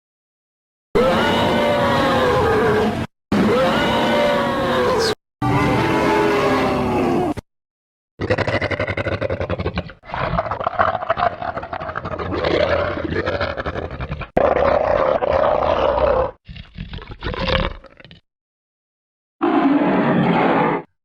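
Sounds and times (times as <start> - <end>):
deep dinosaur roar: 1.0 - 7.4, 8.2 - 16.4, 19.4 - 20.9.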